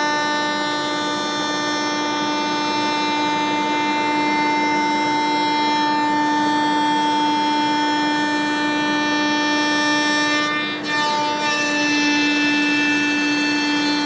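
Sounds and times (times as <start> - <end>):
router spindle whine: 0.0 - 14.0.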